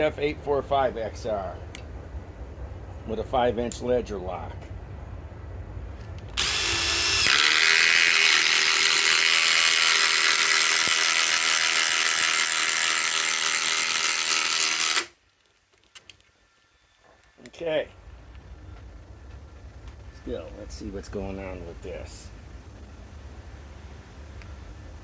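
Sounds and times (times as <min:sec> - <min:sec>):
impact driver driving screw into wood: 0:06.4 - 0:15.2.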